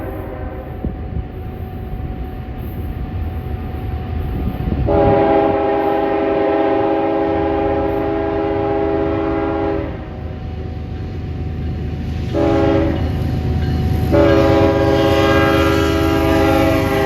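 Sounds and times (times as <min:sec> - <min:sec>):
locomotive air horn blast: 0:00.0 - 0:00.9, 0:04.9 - 0:10.2, 0:12.3 - 0:13.1, 0:14.0 - 0:17.0
train rumbling: 0:00.0 - 0:17.0.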